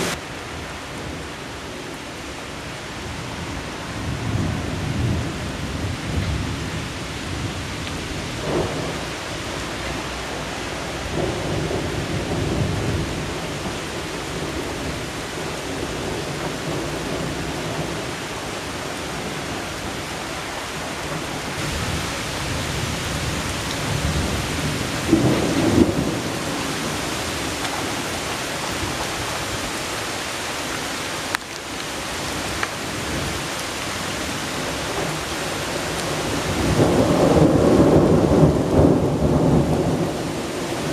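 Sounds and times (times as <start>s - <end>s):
steady rain falling: 0.0s - 40.9s
thunder rumbling: 4.0s - 20.0s, 20.9s - 30.0s, 34.3s - 40.9s.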